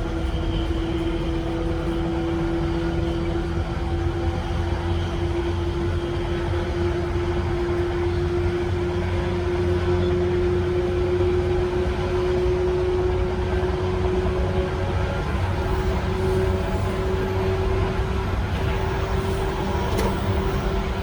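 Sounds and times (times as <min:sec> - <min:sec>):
wheels rumbling on rail: 0:00.0 - 0:21.0
train motor whine: 0:09.7 - 0:21.0.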